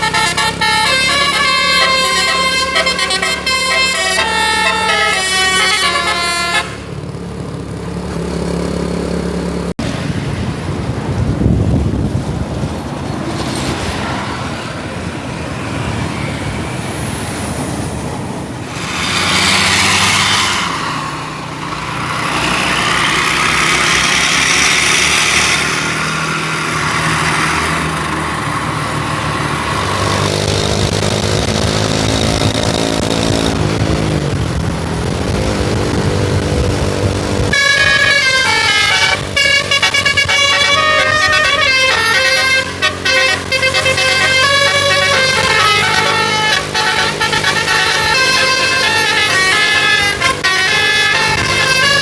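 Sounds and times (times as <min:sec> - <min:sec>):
bus horns playing melody: 0:00.0 - 0:07.1, 0:36.6 - 0:52.0
bus engine and road noise: 0:00.0 - 0:52.0.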